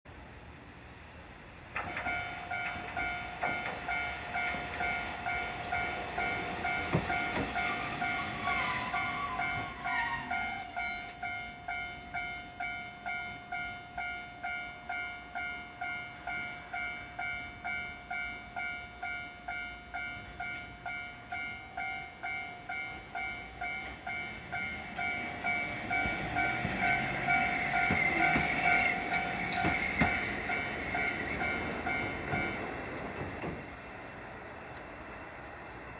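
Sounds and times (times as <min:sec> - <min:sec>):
tram rumbling past: 0:00.1 - 0:35.9
level-crossing warning bell clanging: 0:01.8 - 0:33.8
falling squeal: 0:07.6 - 0:11.2.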